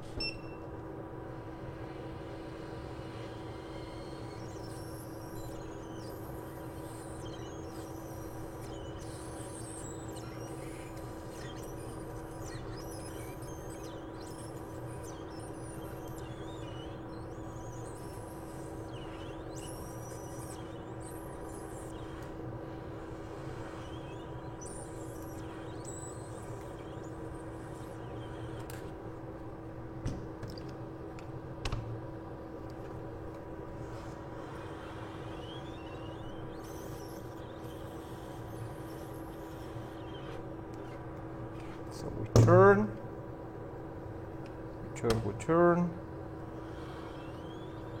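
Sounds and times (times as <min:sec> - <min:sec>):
blade squeaking on circuit board: 0:03.0 - 0:29.1, 0:33.8 - 0:42.9, 0:46.5 - 0:48.0.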